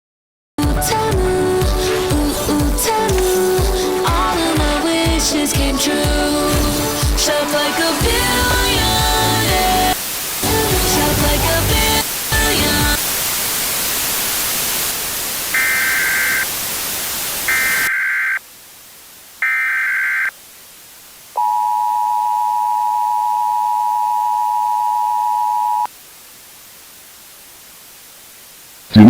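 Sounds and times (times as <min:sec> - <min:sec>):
static hiss: 0:00.6 - 0:22.4, 0:24.6 - 0:29.0
digital data tone bursts: 0:15.6 - 0:16.5, 0:17.5 - 0:18.4
steady two-tone attention signal: 0:15.6 - 0:16.5, 0:21.4 - 0:25.9.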